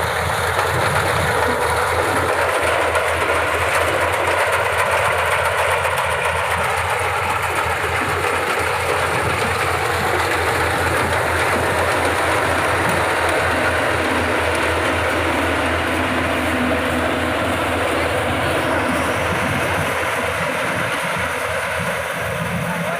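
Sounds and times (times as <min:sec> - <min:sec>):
combine harvester running: 0:00.0 - 0:22.9.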